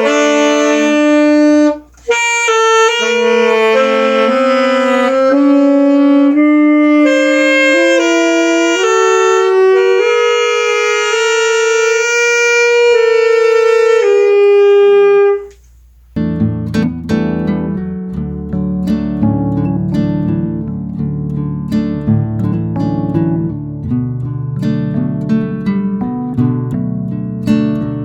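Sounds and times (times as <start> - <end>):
saxophone slow melody: 0.0 - 15.6.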